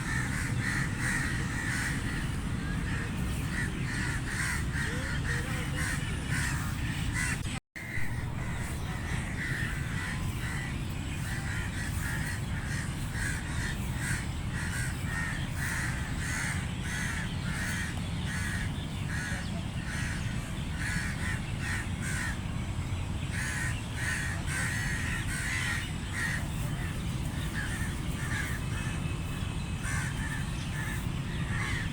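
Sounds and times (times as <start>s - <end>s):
crows cawing: 0.0s - 22.4s, 23.3s - 29.0s, 29.8s - 31.9s
steady low rumble: 0.0s - 31.9s.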